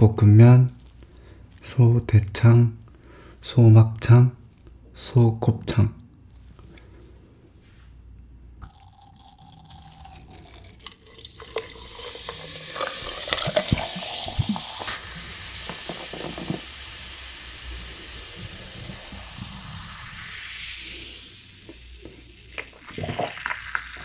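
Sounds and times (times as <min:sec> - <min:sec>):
meat sizzling in a pan: 0:11.0 - 0:24.0.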